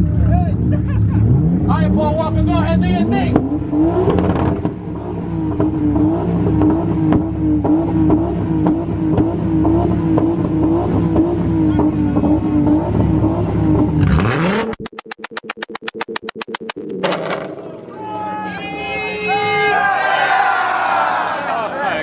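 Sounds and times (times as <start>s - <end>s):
car engine at high revs: 0.0s - 18.0s
exhaust popping: 0.0s - 18.0s
fast run of clicks: 14.5s - 17.5s.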